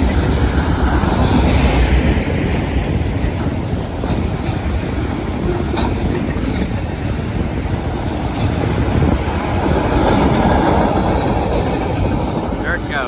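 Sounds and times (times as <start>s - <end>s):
freight train cars rumbling past: 0.0s - 13.0s.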